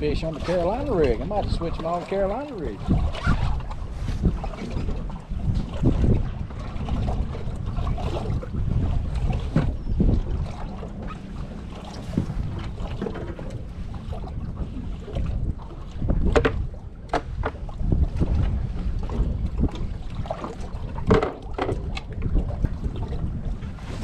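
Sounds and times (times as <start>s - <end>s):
water splashes: 0.0s - 24.0s
wind buffeting microphone: 0.0s - 24.0s
knocks on boat: 9.5s - 9.8s, 16.1s - 18.5s, 21.0s - 22.0s.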